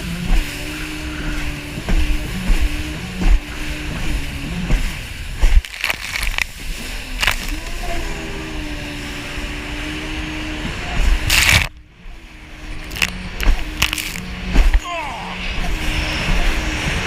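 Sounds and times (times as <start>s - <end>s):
jet ski engine running: 0.0s - 17.0s.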